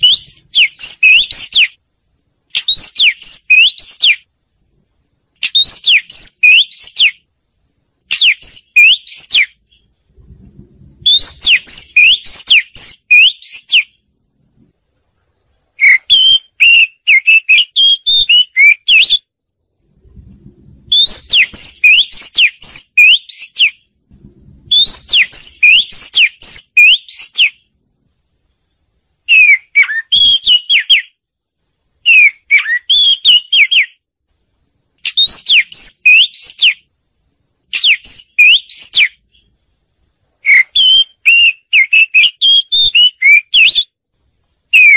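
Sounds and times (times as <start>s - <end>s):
bird singing whistled notes: 0.0s - 1.8s, 2.5s - 4.3s, 5.4s - 7.3s, 8.1s - 10.0s, 11.0s - 14.0s, 15.8s - 19.3s, 20.9s - 24.0s, 24.7s - 27.8s, 29.3s - 31.2s, 32.0s - 34.0s, 35.0s - 36.9s, 37.7s - 39.5s, 40.4s - 44.0s.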